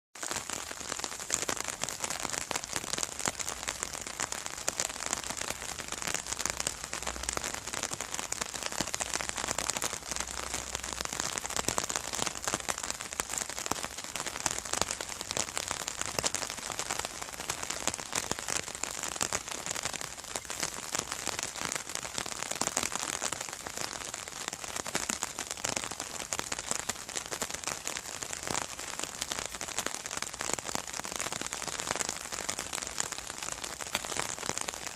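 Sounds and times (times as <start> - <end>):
rain pattering on umbrella: 0.2 - 34.9.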